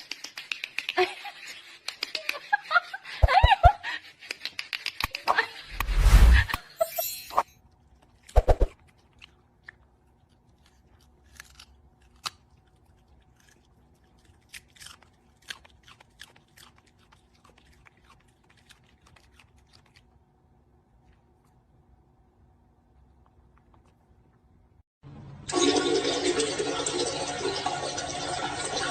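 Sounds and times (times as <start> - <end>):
crunchy chewing: 7.8 - 20.4.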